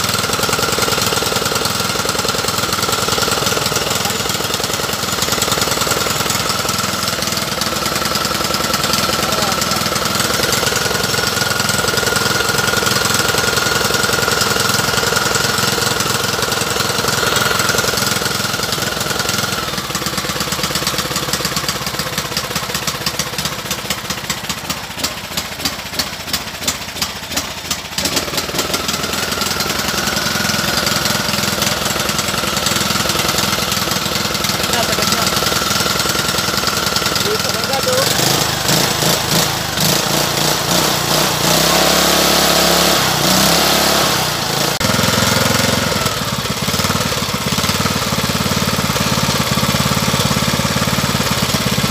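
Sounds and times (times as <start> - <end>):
engine running steadily: 0.0 - 51.9.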